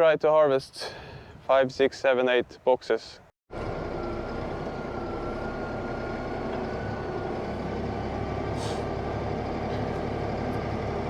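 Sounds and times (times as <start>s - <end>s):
tractor engine running: 3.5s - 11.0s.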